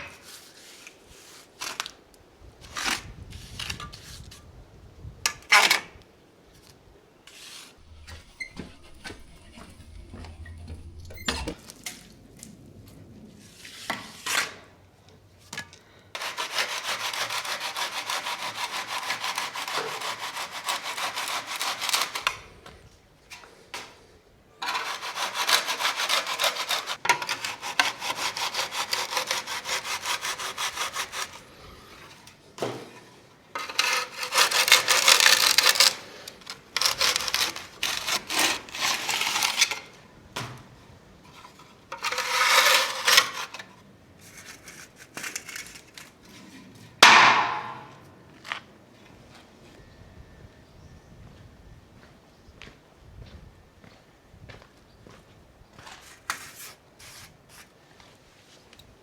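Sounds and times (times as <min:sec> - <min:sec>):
hand tool scraping: 0:07.3 - 0:12.0, 0:15.6 - 0:24.0, 0:24.6 - 0:40.0, 0:41.3 - 0:48.0.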